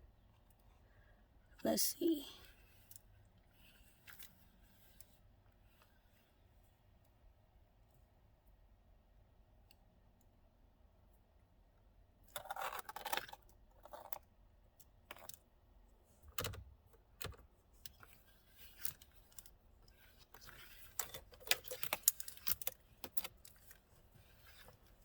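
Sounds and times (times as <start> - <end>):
metal parts clicking and rattling: 20.2 - 23.8.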